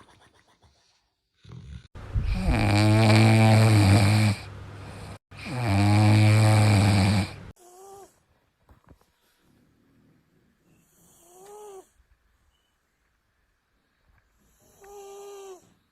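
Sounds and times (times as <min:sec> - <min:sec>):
pet snoring loudly: 0:01.4 - 0:07.5.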